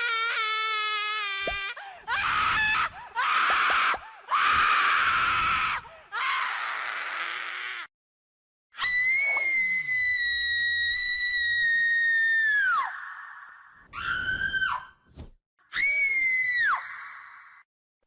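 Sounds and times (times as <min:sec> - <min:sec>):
high-pitched human screams: 0:08.8 - 0:14.9, 0:15.7 - 0:17.6.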